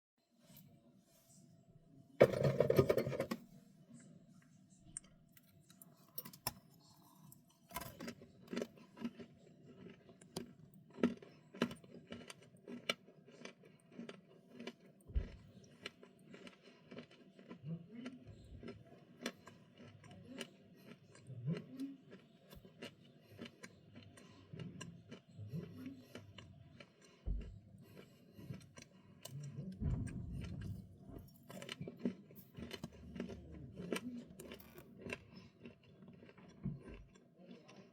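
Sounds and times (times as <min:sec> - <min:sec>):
crunchy snack chewing: 0:06.3 - 0:29.6, 0:31.3 - 0:37.9.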